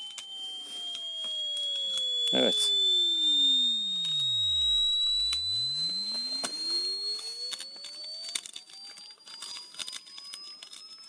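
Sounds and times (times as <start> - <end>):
electronic tone sweeping down and up: 0.0 - 8.4
thin high whistle climbing: 0.0 - 11.0
faint clicks and rustles: 3.7 - 11.0.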